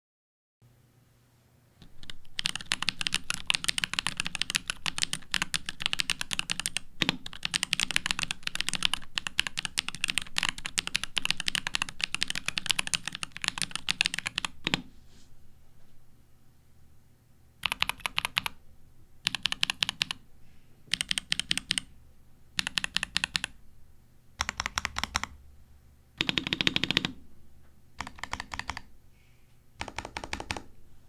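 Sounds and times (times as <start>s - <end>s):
mechanical keyboard typing: 1.8s - 14.8s, 17.6s - 18.6s, 19.2s - 20.2s, 20.9s - 21.9s, 22.6s - 23.6s, 24.4s - 25.4s, 26.2s - 27.2s, 28.0s - 28.9s, 29.8s - 30.7s.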